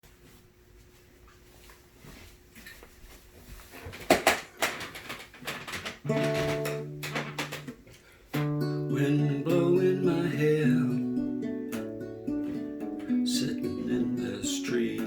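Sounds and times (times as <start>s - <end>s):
knocks and scrapes on guitar: 4.0s - 7.8s
acoustic guitar chords: 6.0s - 15.0s.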